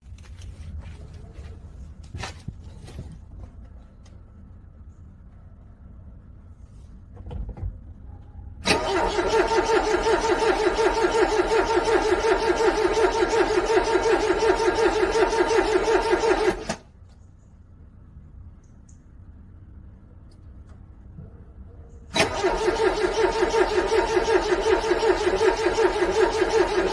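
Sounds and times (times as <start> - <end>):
car starter cranking: 8.6 - 16.9, 22.1 - 26.9.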